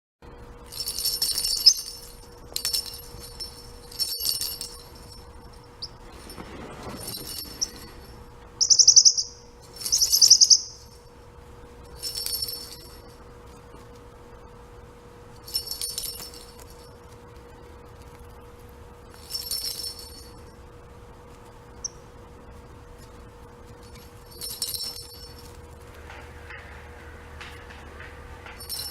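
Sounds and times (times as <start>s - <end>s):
toy ball jingling: 0.6s - 11.0s, 11.9s - 13.2s, 15.4s - 17.1s, 19.1s - 20.5s, 23.7s - 25.9s, 27.4s - 28.9s
parrotlet rattling chirps: 0.7s - 11.0s, 11.9s - 13.1s, 19.1s - 20.4s, 21.4s - 22.1s, 23.0s - 26.8s.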